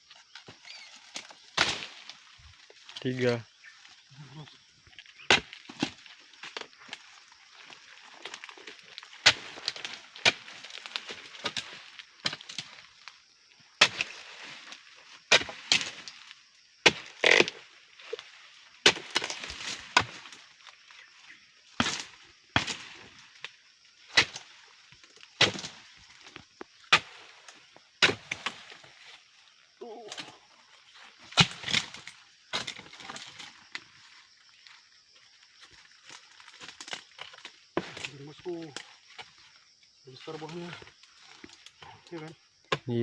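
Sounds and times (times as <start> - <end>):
blade chopping palm fronds: 0.9 - 2.2, 9.2 - 12.8, 13.8 - 16.2, 16.9 - 17.6, 18.9 - 20.4, 21.8 - 23.2, 25.4 - 26.0, 26.9 - 28.9, 31.3 - 33.6.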